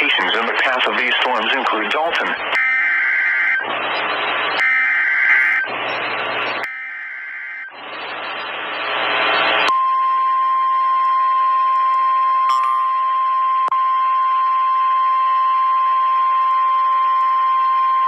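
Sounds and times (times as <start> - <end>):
steady alarm tone: 2.6 - 3.7, 4.6 - 5.7, 6.6 - 7.8
screeching digital data tones: 4.6 - 5.7, 6.6 - 7.8.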